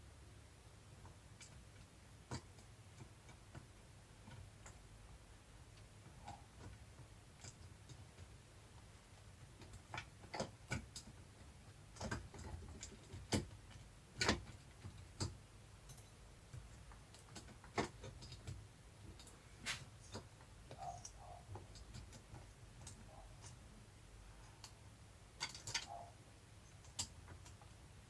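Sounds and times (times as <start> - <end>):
tools and engine parts clicking: 25.4 - 27.6.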